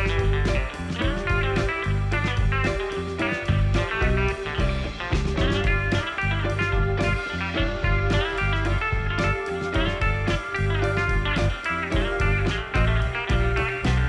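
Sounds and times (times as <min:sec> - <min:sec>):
background music with guitar and bass: 0:00.0 - 0:14.0.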